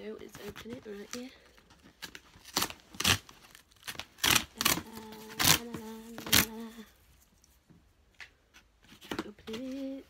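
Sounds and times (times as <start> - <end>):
packaging ripping: 2.0 - 6.8.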